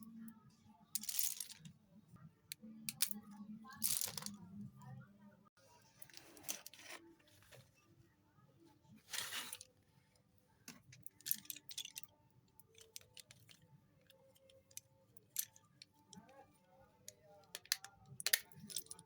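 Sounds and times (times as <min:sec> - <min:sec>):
slate pencils clicking and snapping: 0:01.0 - 0:01.7, 0:02.5 - 0:03.2, 0:11.0 - 0:13.6, 0:17.5 - 0:19.0.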